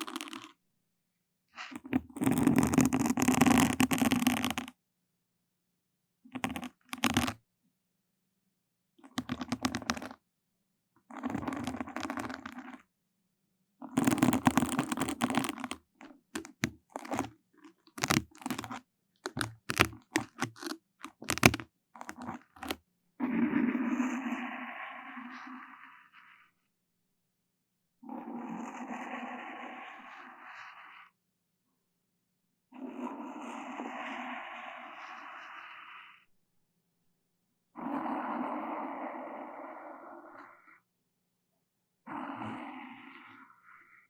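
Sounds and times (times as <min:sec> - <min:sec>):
scraping against microphone: 0:01.6 - 0:04.7, 0:06.4 - 0:07.4, 0:09.0 - 0:10.2, 0:11.1 - 0:12.8, 0:14.0 - 0:22.8.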